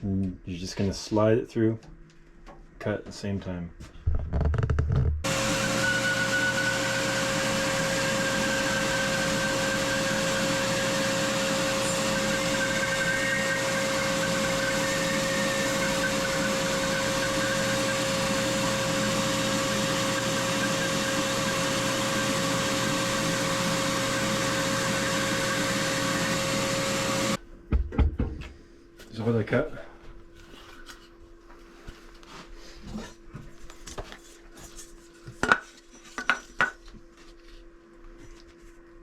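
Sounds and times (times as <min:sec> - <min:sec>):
band saw cutting board: 0:05.2 - 0:27.4.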